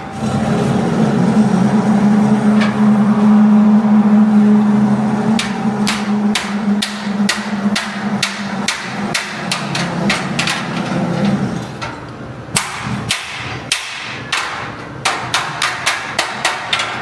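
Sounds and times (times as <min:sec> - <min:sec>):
steady low hum: 0:00.0 - 0:16.9
hammer striking iron on anvil: 0:05.4 - 0:10.7, 0:12.5 - 0:17.0.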